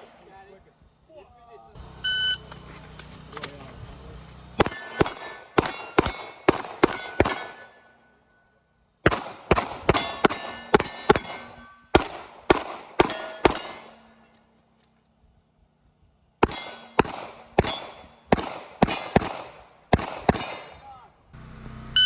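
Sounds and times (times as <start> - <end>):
pistol shots: 4.6 - 7.8, 9.0 - 14.2, 16.4 - 20.8
metallic clang of steel targets: 4.6 - 7.9, 9.8 - 14.5, 16.4 - 19.4, 20.0 - 21.2.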